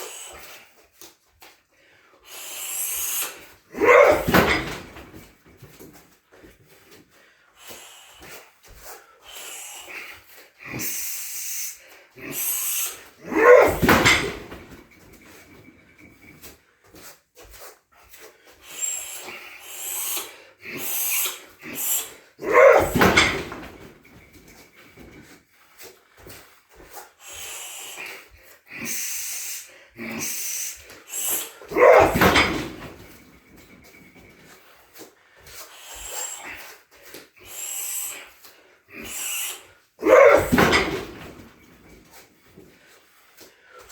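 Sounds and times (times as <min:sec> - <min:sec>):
sharp hissing exhales: 0:02.2 - 0:03.6, 0:07.6 - 0:13.3, 0:18.6 - 0:25.2, 0:27.2 - 0:32.4, 0:35.6 - 0:36.8, 0:37.4 - 0:39.8
man grunting: 0:03.7 - 0:04.9, 0:13.2 - 0:14.5, 0:22.4 - 0:23.7, 0:31.6 - 0:32.9, 0:40.0 - 0:41.2.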